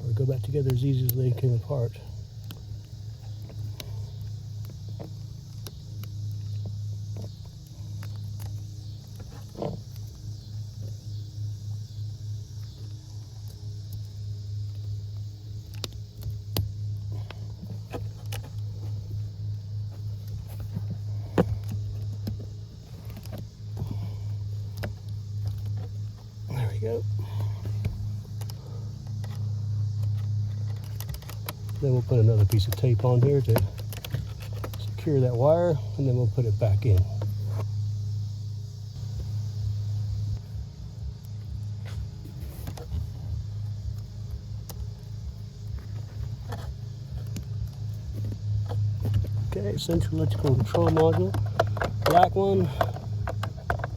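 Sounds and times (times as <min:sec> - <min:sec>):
steady low hum: 0:00.0 - 0:53.9.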